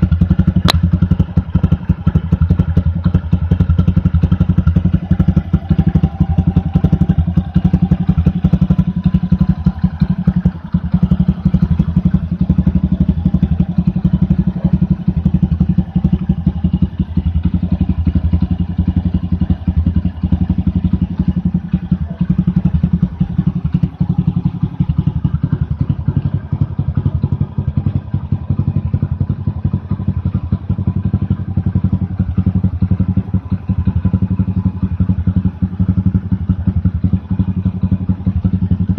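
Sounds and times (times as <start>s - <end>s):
motorcycle engine running steadily: 0.0s - 38.9s.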